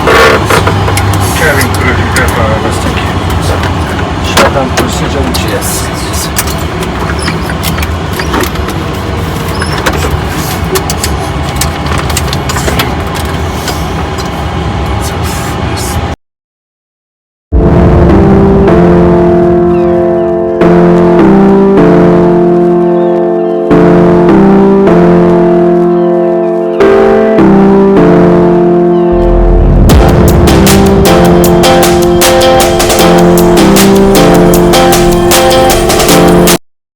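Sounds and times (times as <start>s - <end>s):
airliner cockpit roar: 0.0s - 16.2s, 17.5s - 36.6s
background music with sustained chords: 17.6s - 36.6s
plucked string: 18.1s - 36.6s.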